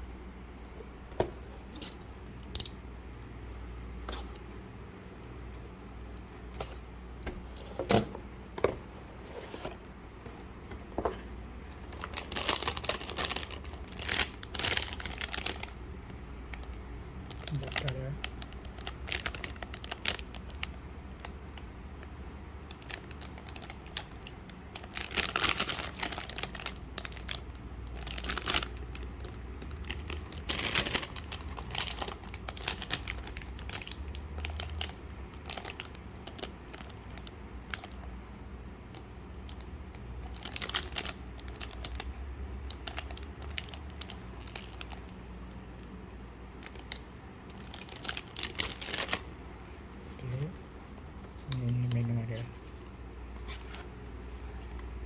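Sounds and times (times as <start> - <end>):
packaging crinkling and rustling: 8.7 - 38.1, 38.9 - 49.4.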